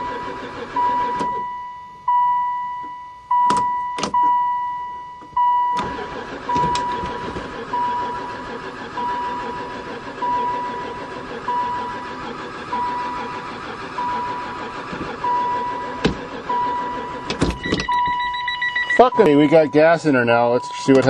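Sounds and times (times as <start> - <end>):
starter motor cranking engine: 0.0 - 1.4, 5.6 - 21.0
warning chime beeping: 15.2 - 21.0.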